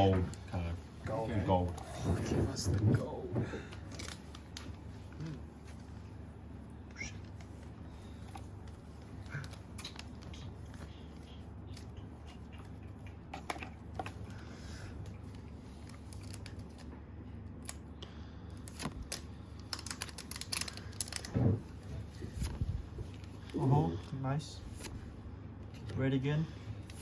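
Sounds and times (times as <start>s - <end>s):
steady low hum: 0.0s - 27.0s
cards and wrapper rustling: 3.8s - 4.8s, 15.6s - 16.9s, 18.6s - 21.4s.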